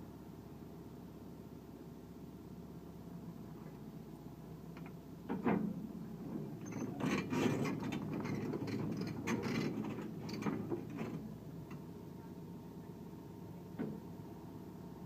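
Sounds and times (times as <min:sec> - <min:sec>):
metal clanks and rattles: 0:05.3 - 0:11.2.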